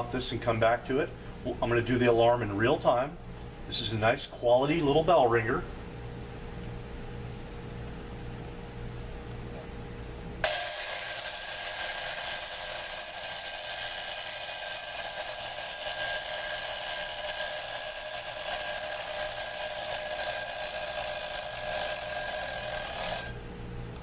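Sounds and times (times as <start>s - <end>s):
alarm clock bells ringing: 10.4s - 23.4s.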